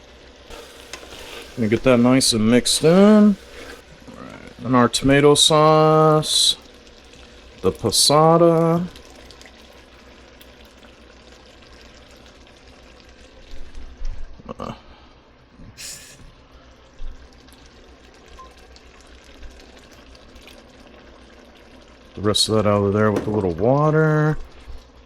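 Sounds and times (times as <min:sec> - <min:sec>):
steady sizzle: 0:00.0 - 0:25.0
sauce being poured into a pot: 0:00.5 - 0:13.6, 0:17.3 - 0:25.0
container knocks: 0:23.1 - 0:23.6.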